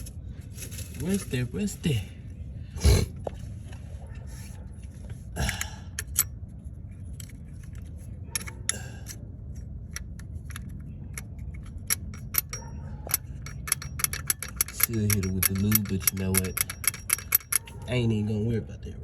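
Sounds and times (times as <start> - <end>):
metallic clicks of hand tools: 5.5 - 6.3, 9.9 - 17.8.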